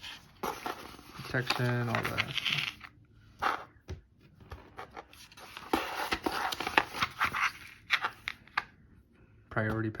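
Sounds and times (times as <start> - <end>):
paper rustling and crinkling: 0.0 - 2.9.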